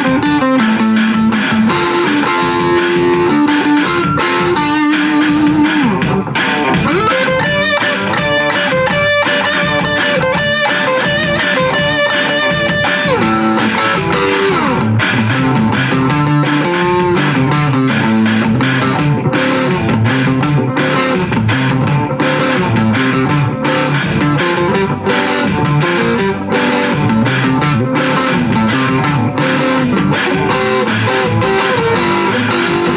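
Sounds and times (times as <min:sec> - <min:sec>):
electric guitar: 0:00.0 - 0:32.9.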